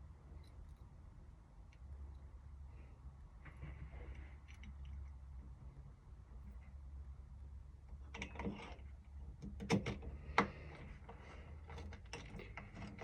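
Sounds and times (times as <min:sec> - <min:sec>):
small clicks of lock parts: 0:08.0 - 0:10.8, 0:11.7 - 0:13.0.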